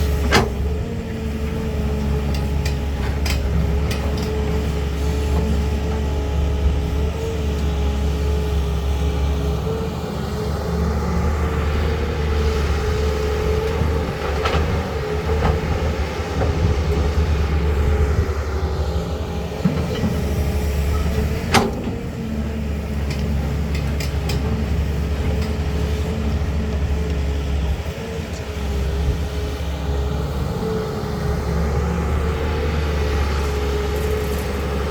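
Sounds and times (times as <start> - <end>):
excavator diesel engine running: 0.0 - 34.9.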